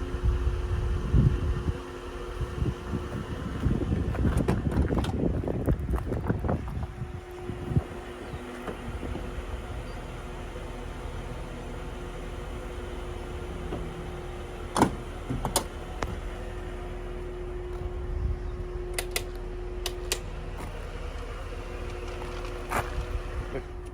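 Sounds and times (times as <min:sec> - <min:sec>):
electric pump hum: 0:00.0 - 0:23.9
mechanism clicks and clunks: 0:18.9 - 0:20.3.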